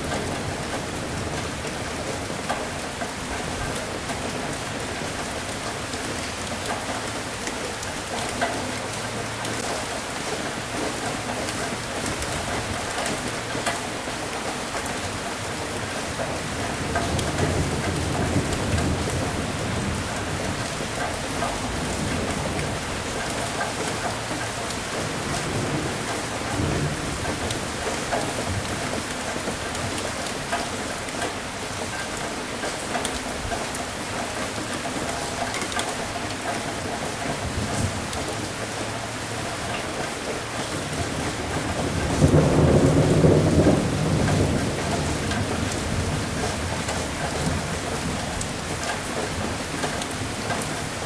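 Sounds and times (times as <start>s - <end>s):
rain pattering: 0.0s - 51.0s
low rolling thunder: 16.1s - 30.7s, 37.3s - 51.0s.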